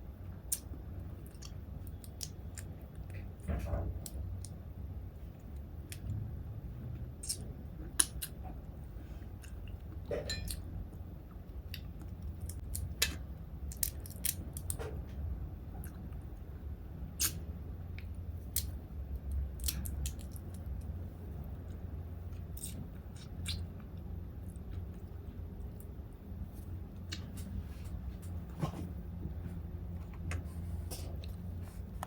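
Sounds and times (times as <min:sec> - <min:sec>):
crab shell cracking: 0:12.4 - 0:14.8, 0:19.5 - 0:20.7.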